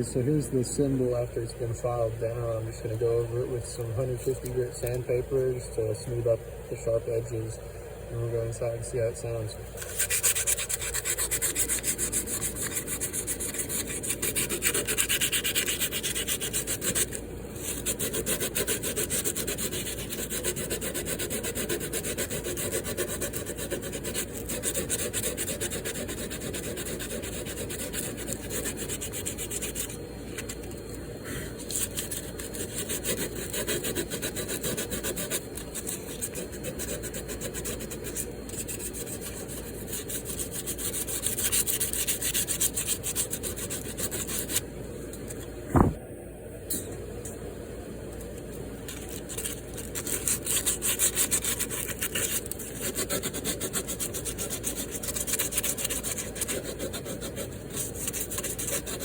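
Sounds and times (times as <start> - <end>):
sandpaper rubbing on metal: 9.8 - 30.7, 31.6 - 44.6, 48.9 - 59.0.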